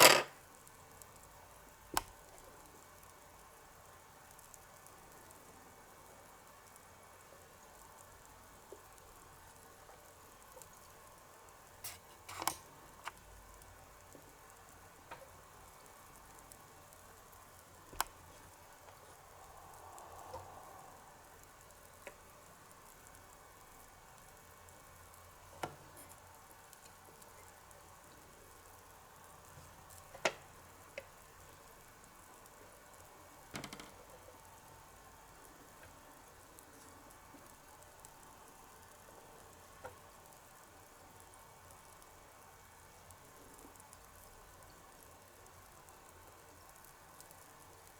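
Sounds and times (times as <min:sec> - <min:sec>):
toy kitchenware clicking: 0:00.0 - 0:00.4
faint steady hiss: 0:00.0 - 0:47.9.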